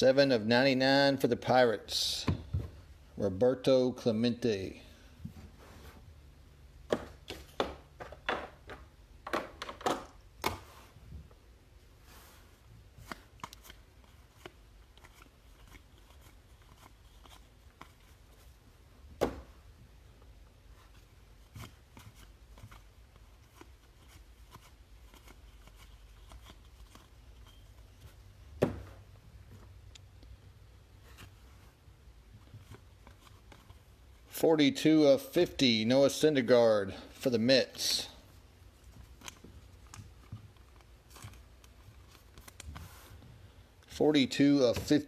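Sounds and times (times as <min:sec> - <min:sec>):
cards rustling and clicking: 0:12.3 - 0:18.6, 0:20.2 - 0:34.4, 0:38.7 - 0:43.3.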